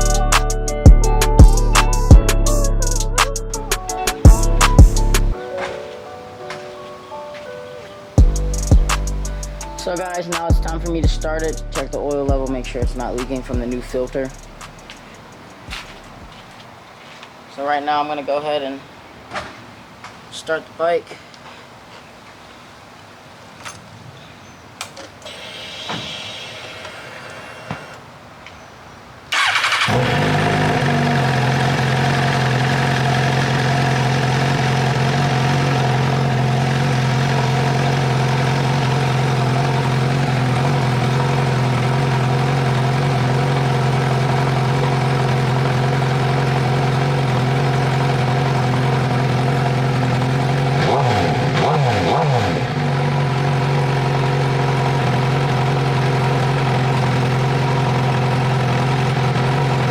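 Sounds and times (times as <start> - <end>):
motorcycle engine starting and idling: 3.6 - 5.4, 12.4 - 16.4, 29.3 - 59.9.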